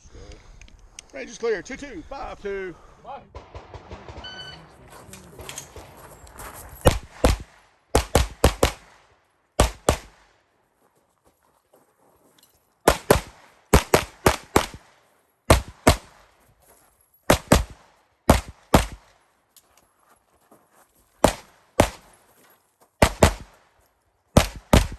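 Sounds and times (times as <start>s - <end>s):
pistol shots: 3.3s - 6.0s, 6.8s - 10.3s, 12.9s - 16.3s, 17.3s - 19.2s, 21.2s - 22.2s, 23.0s - 23.6s, 24.4s - 24.9s.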